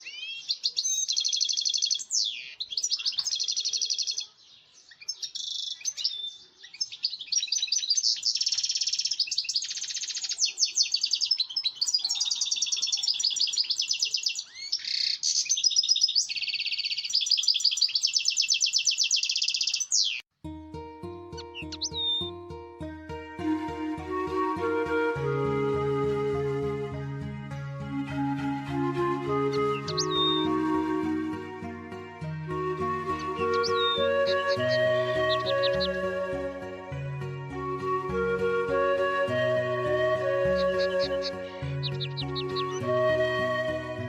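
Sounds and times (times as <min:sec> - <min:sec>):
songbird trilling and twittering: 0:00.0 - 0:20.3, 0:21.4 - 0:22.4, 0:29.5 - 0:30.8, 0:33.0 - 0:36.1, 0:40.6 - 0:42.8.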